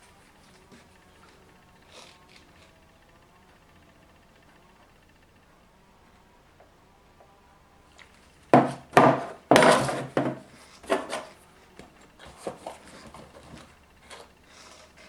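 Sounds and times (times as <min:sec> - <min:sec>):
plastic scraping and rattling: 0:08.5 - 0:14.4
taps and rubs on containers: 0:08.6 - 0:14.3.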